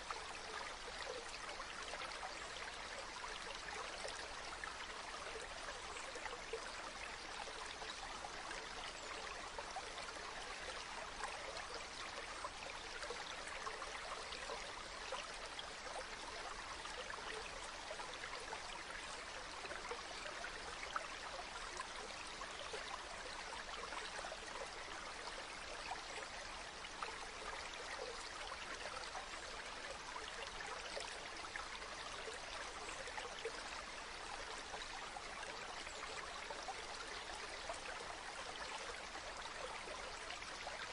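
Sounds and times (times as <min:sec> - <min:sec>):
stream of water trickling: 0:00.0 - 0:40.9.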